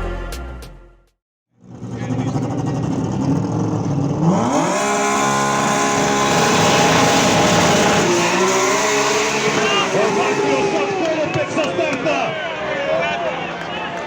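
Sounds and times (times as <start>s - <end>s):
turbo car engine revving: 1.5s - 11.8s.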